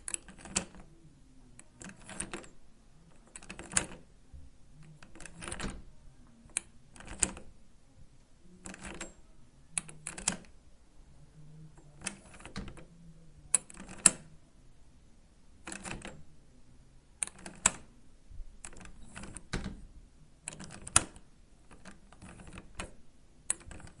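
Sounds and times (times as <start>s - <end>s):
metal door handle clicks and rattles: 0.0s - 0.8s, 1.8s - 2.5s, 3.2s - 4.0s, 4.9s - 5.9s, 6.5s - 7.5s, 8.6s - 9.2s, 9.8s - 10.5s, 13.6s - 14.3s, 15.6s - 16.2s, 17.2s - 17.9s, 18.6s - 19.8s, 20.5s - 24.0s.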